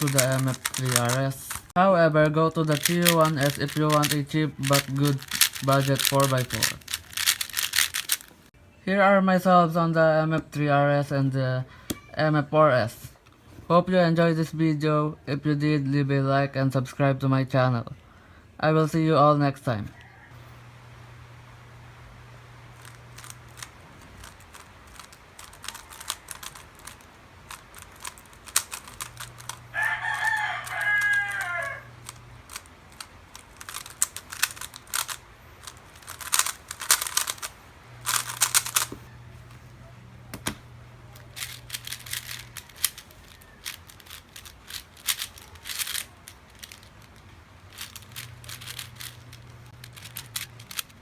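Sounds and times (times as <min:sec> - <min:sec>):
sharp clicking runs: 0:00.0 - 0:01.7, 0:02.6 - 0:08.3
rooster crowing: 0:19.9 - 0:20.7, 0:29.4 - 0:32.2, 0:42.0 - 0:44.1.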